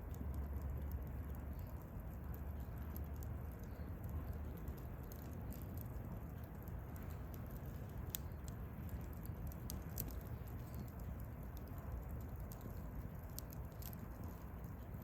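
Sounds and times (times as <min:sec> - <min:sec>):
burning wood crackling and popping: 0:00.0 - 0:15.0
campfire flames rumbling: 0:00.0 - 0:15.0.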